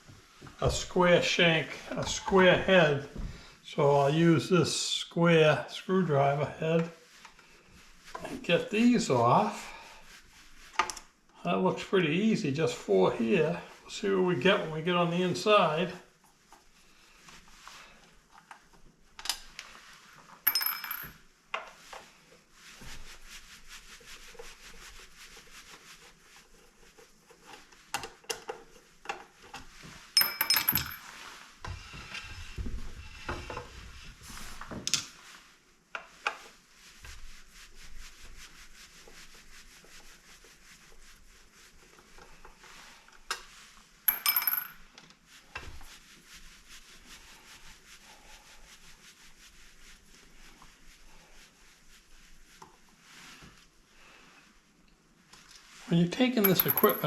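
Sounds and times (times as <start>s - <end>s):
sharp metallic clinks: 30.2s - 31.0s, 56.5s - 57.0s.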